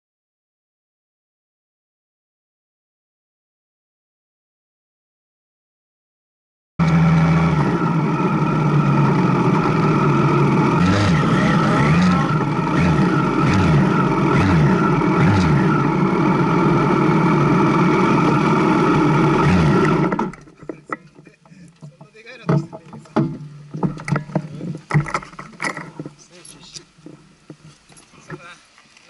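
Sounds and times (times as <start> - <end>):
motorcycle engine running: 6.8 - 22.0.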